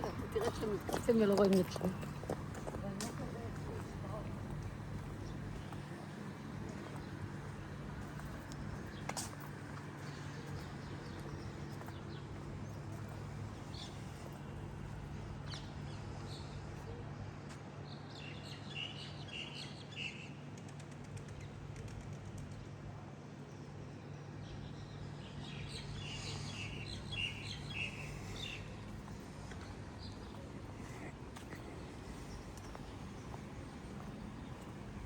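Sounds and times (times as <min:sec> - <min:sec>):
small birds chirping: 0:00.0 - 0:16.6, 0:24.6 - 0:35.0
steady low hum: 0:21.4 - 0:35.0.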